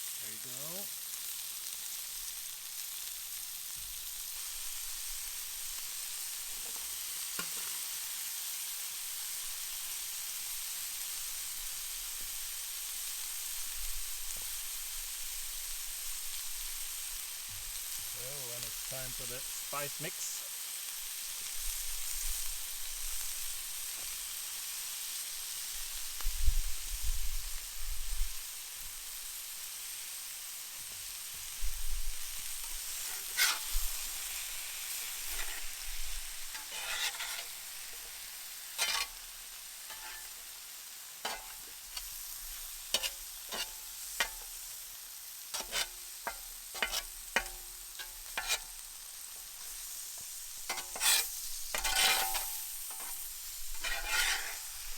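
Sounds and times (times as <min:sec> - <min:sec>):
food sizzling in a pan: 0:00.0 - 0:54.9
utensil scraping a pan: 0:06.6 - 0:07.9, 0:32.5 - 0:40.6, 0:41.2 - 0:44.8, 0:45.5 - 0:54.9.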